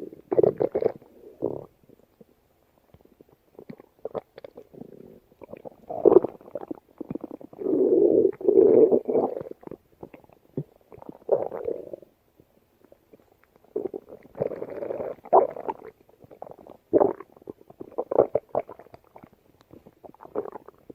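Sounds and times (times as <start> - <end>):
stomach growling and gurgling: 0.0 - 20.9.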